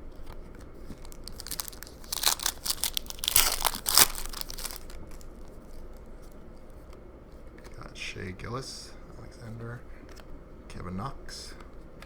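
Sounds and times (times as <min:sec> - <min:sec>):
wrapper crinkling: 0:00.8 - 0:05.5.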